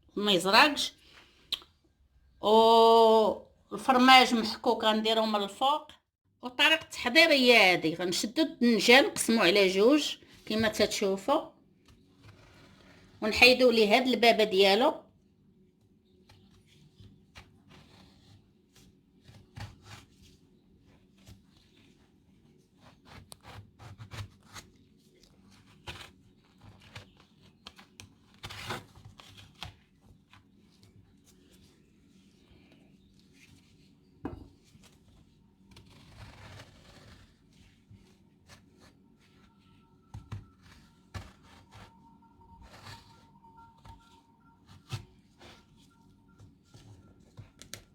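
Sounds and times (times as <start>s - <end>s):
scraping eggplant flesh: 16.0s - 47.9s.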